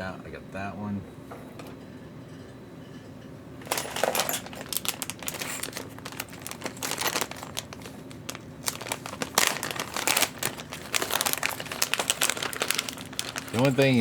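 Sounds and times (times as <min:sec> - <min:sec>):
plastic crinkling and rustling: 0:03.6 - 0:14.0.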